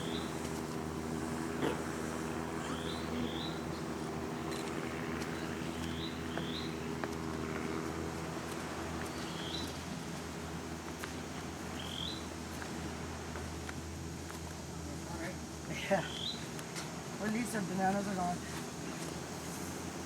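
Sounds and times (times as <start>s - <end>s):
bird chirping: 0.0s - 0.4s, 2.6s - 4.5s, 5.3s - 6.9s, 9.1s - 9.8s, 11.8s - 12.2s, 16.0s - 16.4s
steady low hum: 0.0s - 20.0s.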